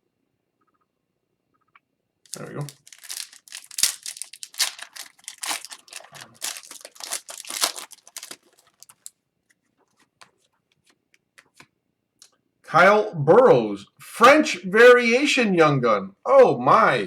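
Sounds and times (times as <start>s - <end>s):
plastic wrapper crinkling and tearing: 2.3s - 9.2s.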